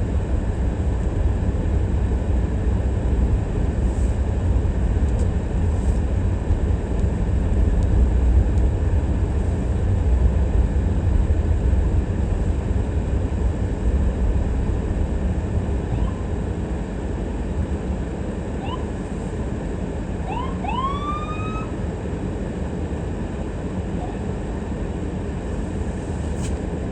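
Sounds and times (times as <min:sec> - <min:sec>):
car driving rumble: 0:00.0 - 0:26.9
siren whoops: 0:15.9 - 0:16.3, 0:18.6 - 0:19.0, 0:20.2 - 0:21.8, 0:24.0 - 0:24.3.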